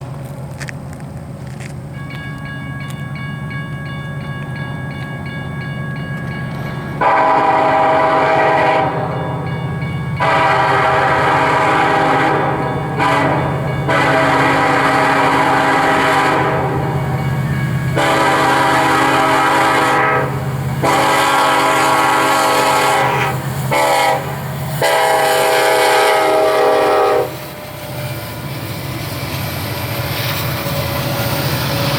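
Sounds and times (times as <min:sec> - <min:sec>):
diesel locomotives rumbling: 0:00.0 - 0:31.9
train air horn blasts: 0:07.0 - 0:09.4, 0:10.2 - 0:17.1, 0:17.9 - 0:27.8.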